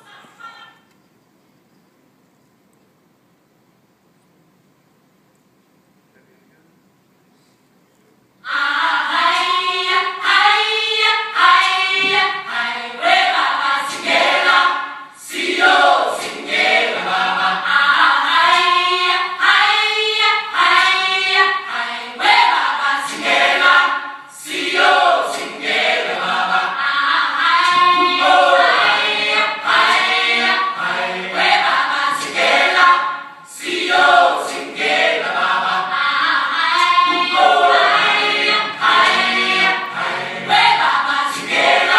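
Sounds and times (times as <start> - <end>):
choir singing: 8.4 - 41.9.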